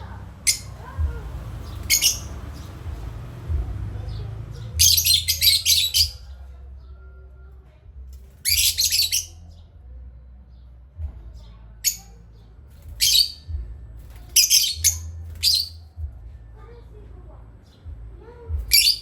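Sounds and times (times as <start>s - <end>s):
steady low hum: 0.0s - 19.0s
parrots chirping and squawking: 0.4s - 3.4s, 4.6s - 6.2s, 8.4s - 9.4s, 12.9s - 13.4s, 14.3s - 15.8s, 18.7s - 19.0s.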